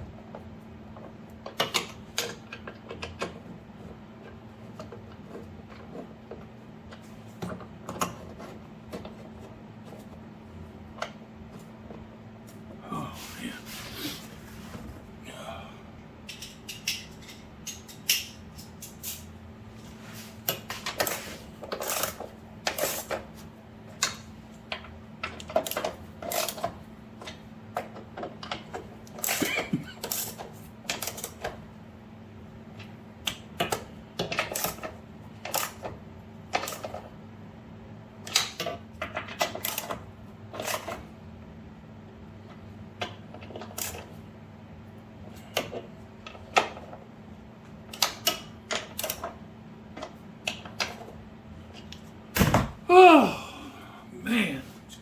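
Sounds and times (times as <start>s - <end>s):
steady low hum: 9.3s - 17.5s, 52.7s - 55.0s.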